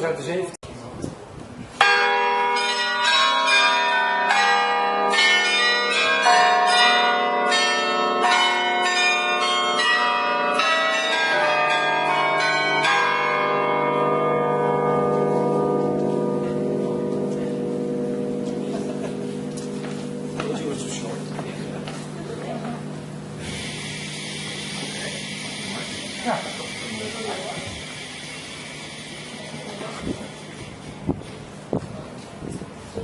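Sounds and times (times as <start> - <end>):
carillon bells playing a tune: 1.8 - 23.2.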